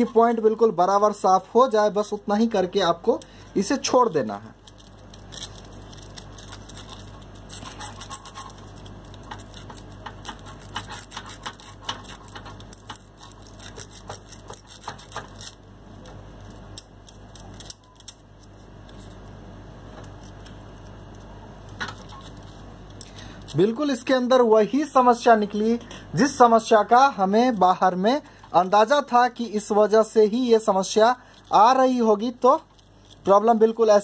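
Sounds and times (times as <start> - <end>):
small scratches and clicks: 4.6 - 23.6
sandpaper scraping metal contacts: 4.8 - 15.6.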